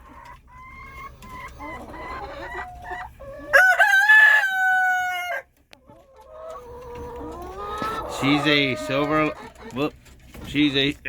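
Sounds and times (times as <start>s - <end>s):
chickens clucking: 0.0s - 11.0s
rooster crowing: 3.5s - 5.5s.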